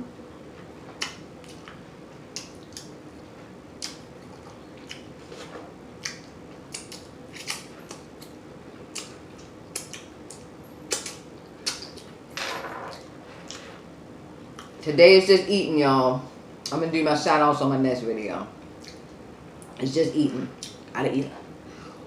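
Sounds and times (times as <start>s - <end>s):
open-mouthed chewing with lip smacks: 1.0s - 2.9s, 3.8s - 5.1s, 6.0s - 12.1s, 18.8s - 19.1s.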